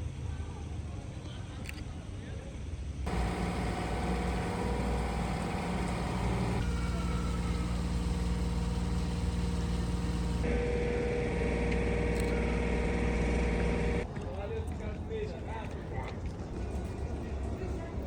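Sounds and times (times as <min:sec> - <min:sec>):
vehicle engine humming: 0:03.1 - 0:14.0.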